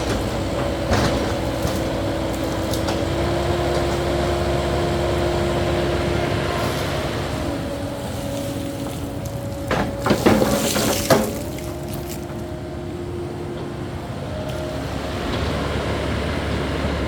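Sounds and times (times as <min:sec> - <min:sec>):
excavator diesel engine running: 0:00.0 - 0:17.0
rushing pouring noise: 0:10.2 - 0:12.3.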